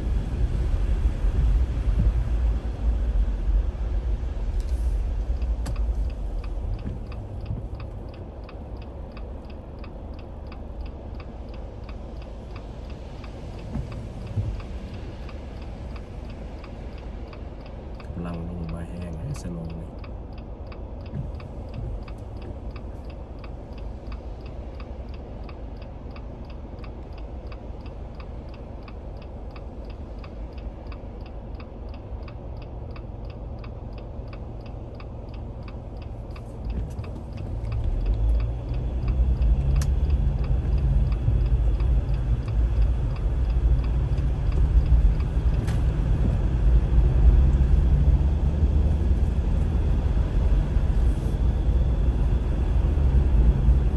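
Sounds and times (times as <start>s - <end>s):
car engine and road rumble: 0.0s - 53.9s
turn signal ticking: 0.3s - 3.0s, 4.6s - 53.9s.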